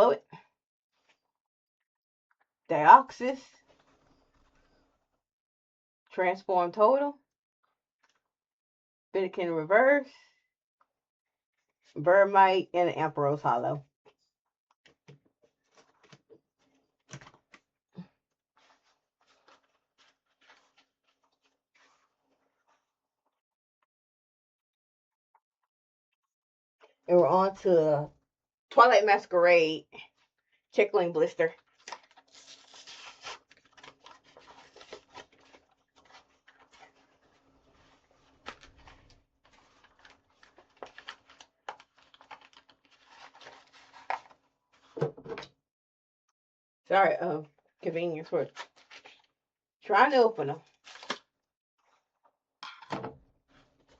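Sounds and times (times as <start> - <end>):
trading cards rustling: 18.6 - 22.1, 31.7 - 44.4, 50.8 - 51.2
plastic packaging scratching and clicking: 31.6 - 44.4.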